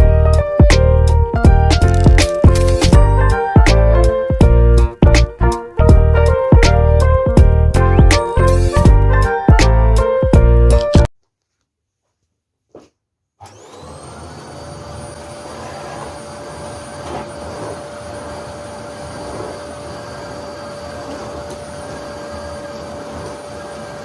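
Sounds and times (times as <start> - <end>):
vacuum cleaner running: 13.4 - 24.0.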